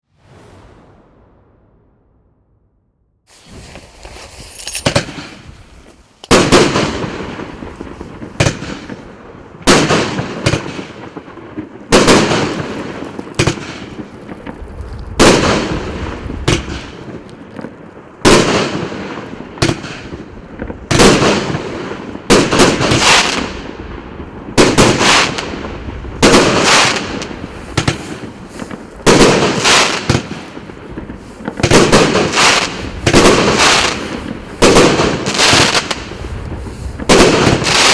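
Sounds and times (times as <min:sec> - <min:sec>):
firework battery bangs: 0:06.2 - 0:09.0, 0:11.9 - 0:17.3, 0:24.6 - 0:37.9.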